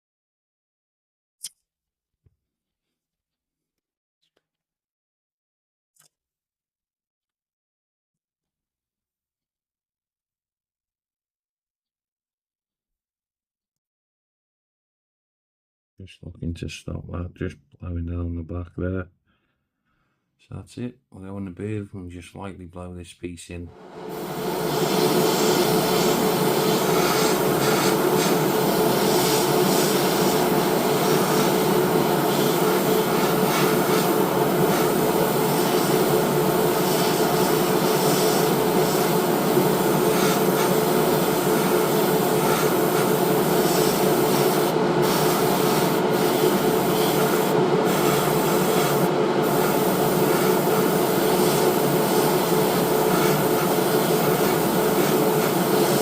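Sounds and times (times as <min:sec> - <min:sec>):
airbrush spraying hiss: 0:23.8 - 0:56.0
extraction fan running: 0:23.8 - 0:56.0.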